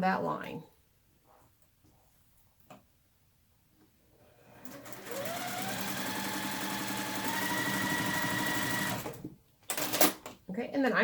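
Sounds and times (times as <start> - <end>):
sewing machine motor whine: 4.4 - 9.9.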